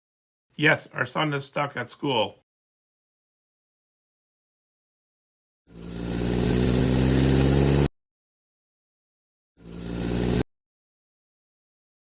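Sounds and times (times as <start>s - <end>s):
vehicle engine: 5.7s - 7.9s, 9.6s - 10.4s.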